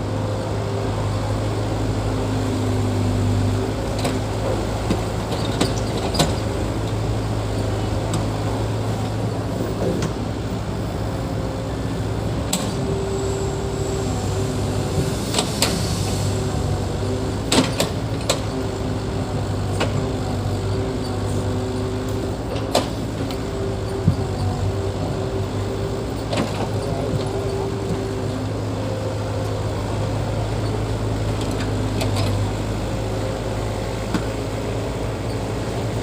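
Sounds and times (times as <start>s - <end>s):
heavy diesel engine running: 0.0s - 36.0s.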